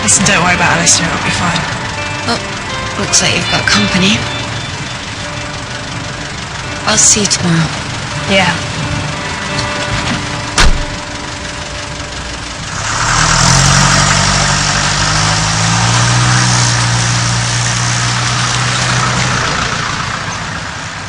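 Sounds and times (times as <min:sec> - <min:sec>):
car engine running: 0:00.0 - 0:21.0
sharp knock: 0:10.6 - 0:10.9.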